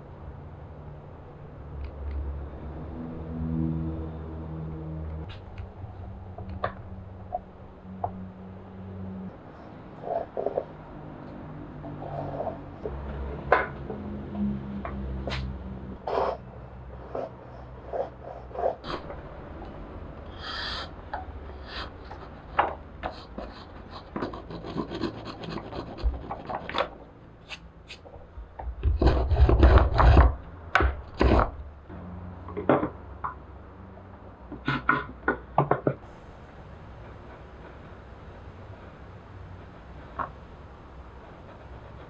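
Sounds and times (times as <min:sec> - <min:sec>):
hand tool scraping wood: 0:28.8 - 0:30.4.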